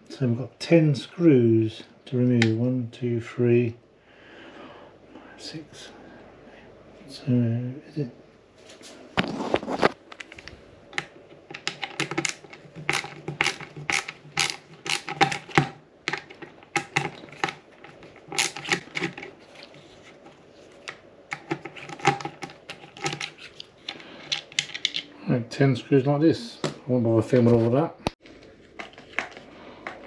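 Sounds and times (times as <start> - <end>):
screwdriver undoing small screws: 11.6 - 17.6.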